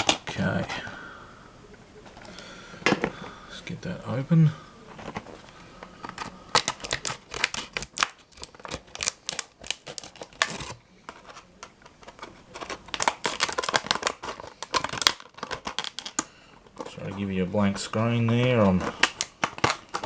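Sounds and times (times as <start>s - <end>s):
plastic packaging crackling: 4.9s - 20.0s.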